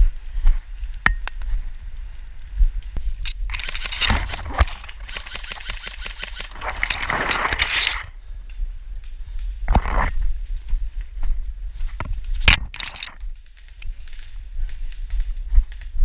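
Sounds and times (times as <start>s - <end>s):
steady low rumble: 0.0s - 16.0s
rustling and scraping: 3.0s - 8.2s, 9.6s - 10.8s, 11.7s - 13.3s.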